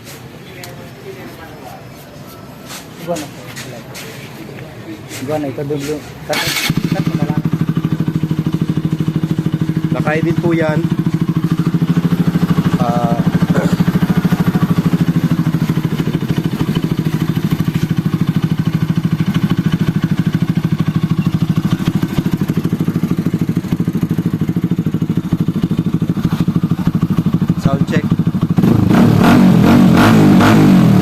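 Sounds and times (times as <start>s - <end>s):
motorcycle engine idling: 6.3s - 29.4s.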